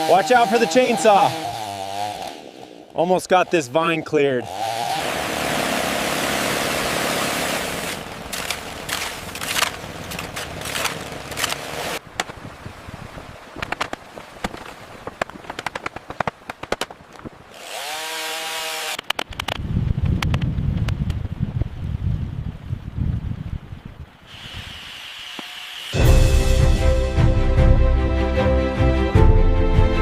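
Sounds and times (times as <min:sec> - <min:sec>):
chainsaw running: 0:00.0 - 0:12.0, 0:17.5 - 0:19.0
sharp cracks and clicks: 0:08.3 - 0:12.4, 0:13.6 - 0:17.3, 0:18.9 - 0:19.6.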